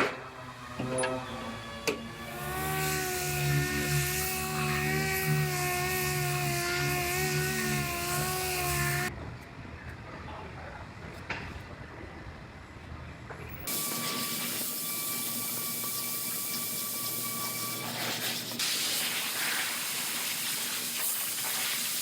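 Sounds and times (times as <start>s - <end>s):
air tool whining: 0.0s - 9.1s, 13.7s - 21.5s
loud air hiss: 18.1s - 22.0s.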